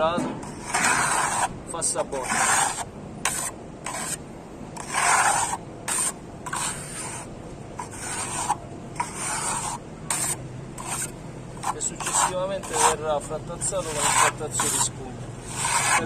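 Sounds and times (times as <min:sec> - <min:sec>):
trowel scraping plaster: 0:00.4 - 0:04.2, 0:04.8 - 0:16.0.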